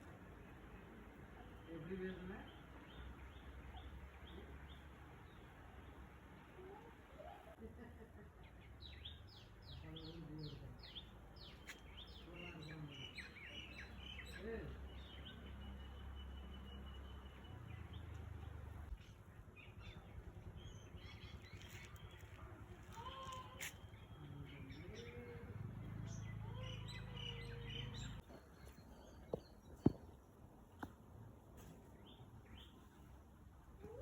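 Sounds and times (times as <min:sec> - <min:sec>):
birds chirping: 0:08.4 - 0:31.0.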